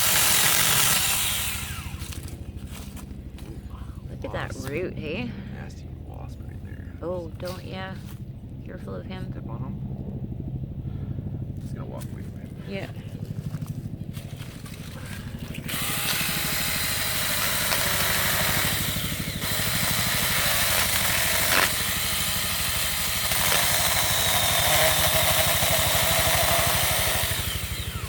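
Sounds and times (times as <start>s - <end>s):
mini chainsaw cutting wood: 0.0s - 3.0s, 13.5s - 28.0s.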